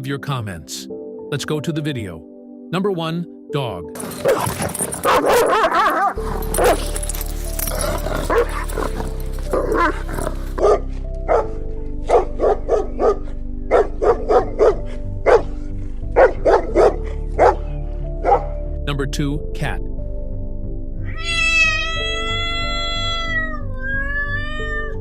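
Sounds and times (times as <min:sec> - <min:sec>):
background music: 0:00.0 - 0:25.0
dog barking: 0:04.1 - 0:07.0, 0:08.0 - 0:18.6.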